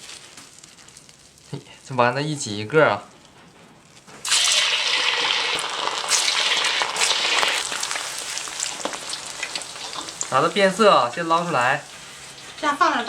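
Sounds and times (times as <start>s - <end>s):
meatballs sizzling in hot oil: 4.2s - 13.0s.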